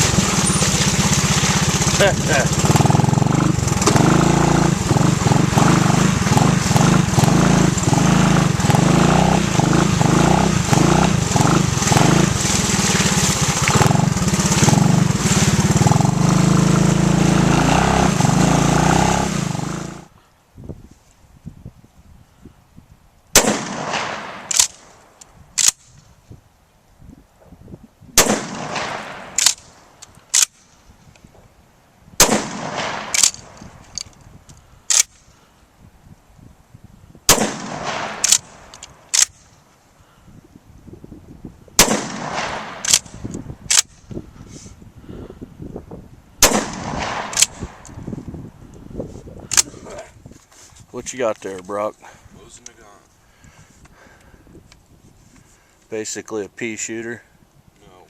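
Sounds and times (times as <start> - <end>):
sharp gunshot cracks: 23.3 - 25.0, 28.2 - 30.7, 32.2 - 33.6, 37.3 - 39.4, 41.8 - 44.0, 46.4 - 47.9
gunshot with long echo: 23.4 - 24.8, 28.2 - 29.5, 32.2 - 33.6, 37.3 - 38.6, 41.8 - 43.2, 46.4 - 47.8.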